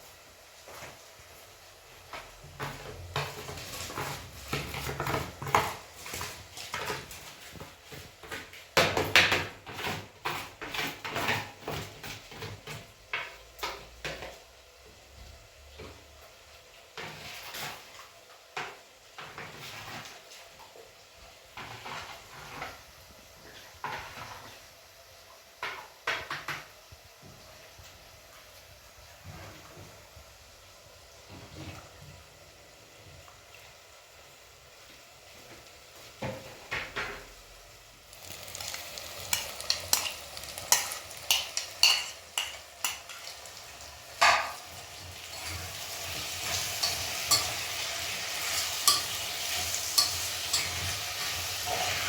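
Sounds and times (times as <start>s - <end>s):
objects knocking and clattering: 2.4s - 14.4s, 44.2s - 44.7s.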